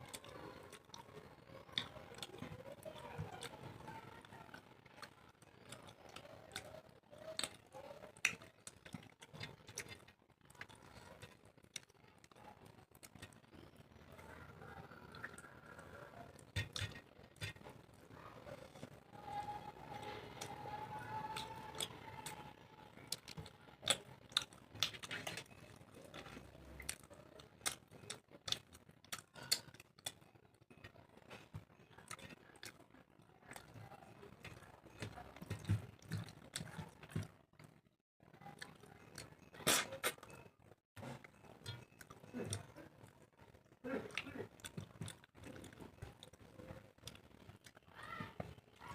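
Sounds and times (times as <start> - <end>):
person chewing: 0.0 - 3.8, 4.5 - 13.8, 15.1 - 37.7, 38.5 - 43.2, 44.0 - 47.8
mouth clicks and smacks: 38.6 - 40.4.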